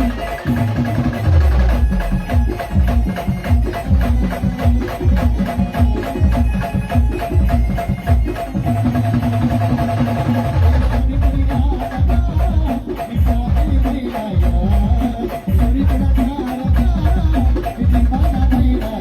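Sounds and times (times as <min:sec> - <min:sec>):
held instrumental notes: 0:00.0 - 0:13.5
fast percussion beat: 0:00.0 - 0:19.0.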